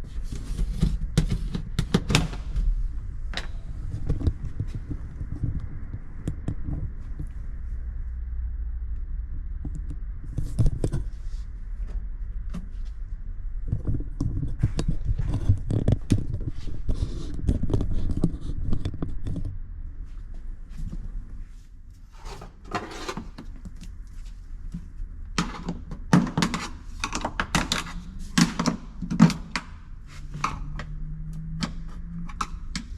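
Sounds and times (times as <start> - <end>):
steady low rumble: 0.0 - 22.8.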